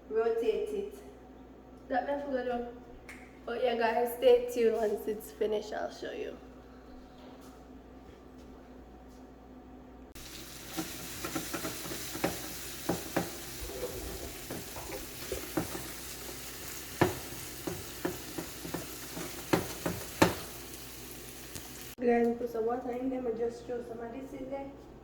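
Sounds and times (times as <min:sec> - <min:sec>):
food sizzling in oil: 0:10.2 - 0:22.0
utensil knocking against pan: 0:10.7 - 0:13.6, 0:14.4 - 0:16.0, 0:16.8 - 0:20.6.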